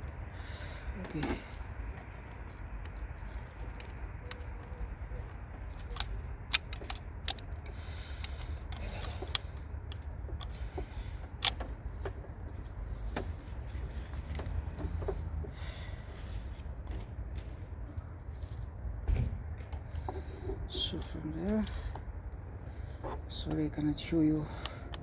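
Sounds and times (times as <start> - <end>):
steady low hum: 0.0 - 25.0
clicks of plastic and metal parts: 1.0 - 15.3, 19.1 - 22.1, 23.0 - 25.0
rustling and scraping: 1.0 - 21.7.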